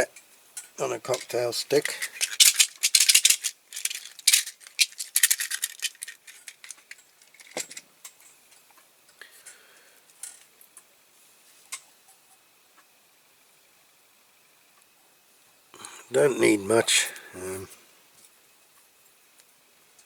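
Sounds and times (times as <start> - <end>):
small hard objects clattering: 1.0 - 7.8.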